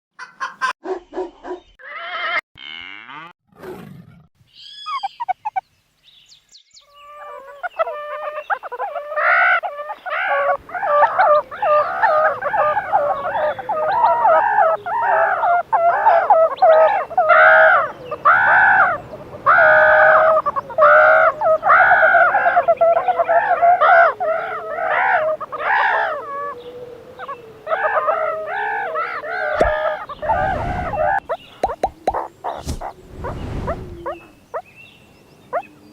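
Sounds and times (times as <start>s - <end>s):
meerkats calling: 4.7s - 5.6s, 7.0s - 33.0s, 33.9s - 34.7s
short sweeping sounds: 29.6s - 34.3s.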